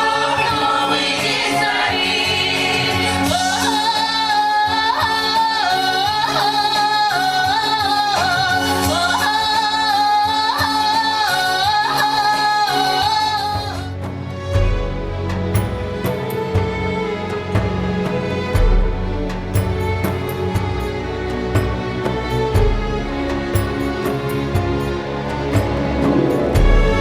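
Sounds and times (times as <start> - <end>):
person singing long ornamented notes: 0.0 - 14.0
musical accompaniment: 0.0 - 27.0.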